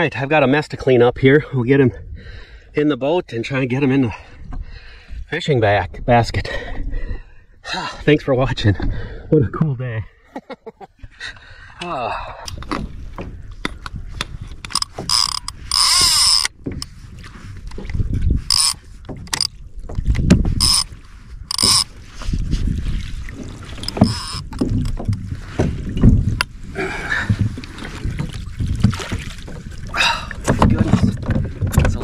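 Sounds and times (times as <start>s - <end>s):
gear knocking and thudding: 12.5s - 16.9s, 17.7s - 20.9s, 21.5s - 21.9s, 23.8s - 26.5s
fish splashing: 23.2s - 25.1s.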